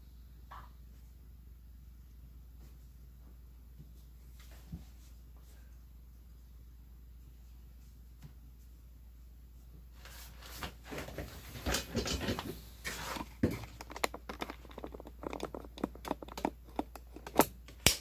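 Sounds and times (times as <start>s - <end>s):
metal parts clicking and knocking: 13.4s - 18.0s.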